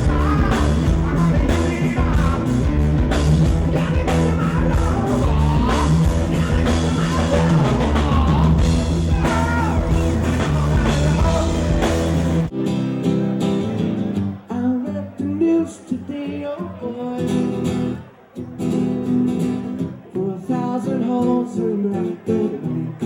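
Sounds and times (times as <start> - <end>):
person singing: 0.0 - 12.5, 14.3 - 17.7, 20.1 - 23.0
live rock band playing: 0.0 - 15.4.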